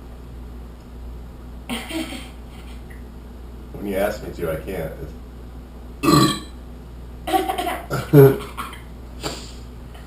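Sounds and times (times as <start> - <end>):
man belching: 6.0 - 6.5, 7.9 - 8.5.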